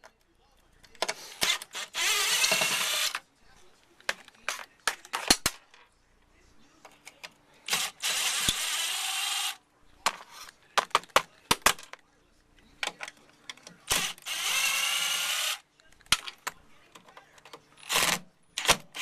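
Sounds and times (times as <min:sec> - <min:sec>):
power drill running: 0:01.4 - 0:03.2, 0:07.7 - 0:09.6, 0:13.9 - 0:15.6.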